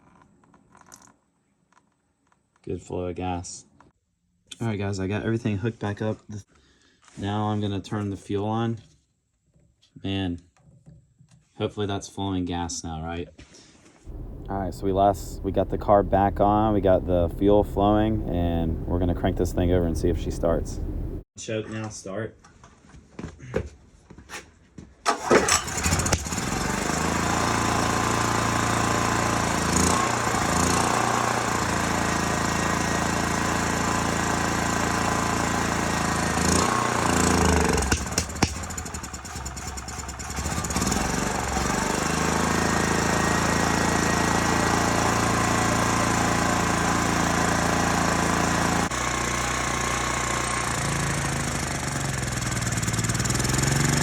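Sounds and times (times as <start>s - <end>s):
engine pop: 14.1s - 21.2s, 25.4s - 26.5s, 36.6s - 40.9s
generator engine running: 14.1s - 21.2s, 25.6s - 54.0s.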